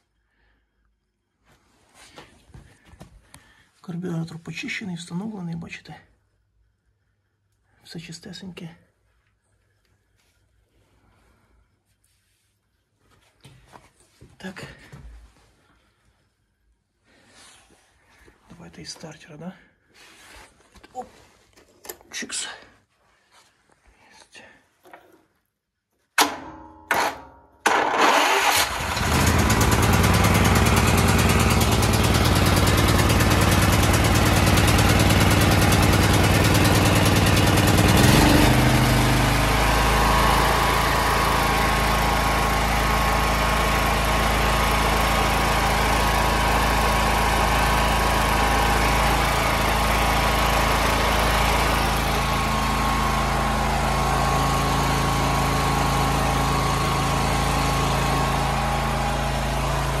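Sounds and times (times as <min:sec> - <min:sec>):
petrol generator engine running: 0:27.7 - 1:00.0.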